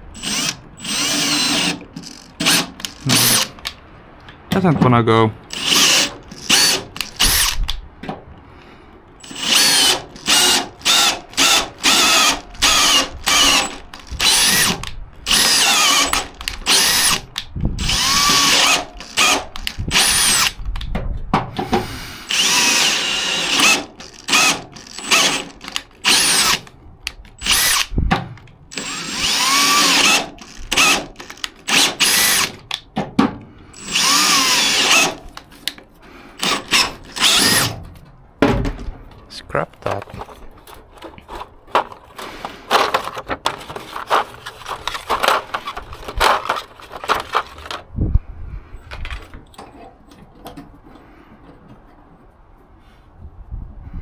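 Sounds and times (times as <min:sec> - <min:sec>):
power drill motor whining: 0:00.1 - 0:03.7, 0:05.5 - 0:07.8, 0:09.2 - 0:20.7, 0:22.2 - 0:26.7, 0:27.4 - 0:27.9, 0:28.7 - 0:32.7, 0:33.8 - 0:35.4, 0:36.4 - 0:37.8
drill chuck slipping: 0:00.2 - 0:03.8, 0:05.5 - 0:07.8, 0:09.2 - 0:20.8, 0:22.2 - 0:27.9, 0:28.7 - 0:32.8, 0:33.8 - 0:37.8, 0:39.9 - 0:47.8.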